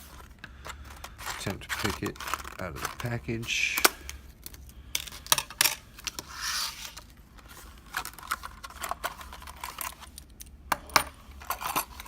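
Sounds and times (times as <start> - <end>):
plastic packaging clicks and rustles: 0.0 - 6.3, 6.9 - 10.6
plastic packaging swish and scrapes: 6.2 - 7.9.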